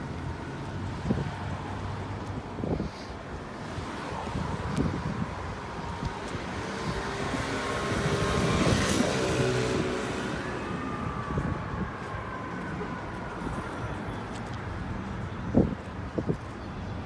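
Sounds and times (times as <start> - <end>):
city traffic noise: 0.0 - 17.0
vehicle passing by: 3.7 - 11.6.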